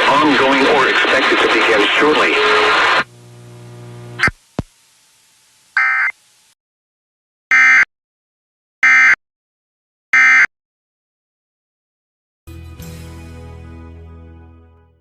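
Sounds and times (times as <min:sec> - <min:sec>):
music: 0:12.5 - 0:15.0.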